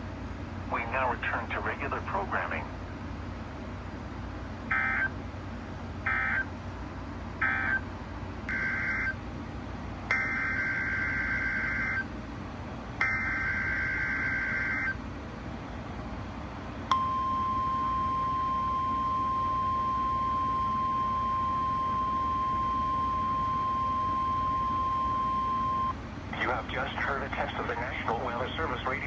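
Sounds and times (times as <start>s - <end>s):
radio hiss: 0.7s - 2.7s, 26.3s - 29.0s
steady warning alarm tone: 4.7s - 5.2s, 6.0s - 6.5s, 7.4s - 7.9s, 8.5s - 9.2s, 10.1s - 12.1s, 13.0s - 15.0s, 16.9s - 26.0s.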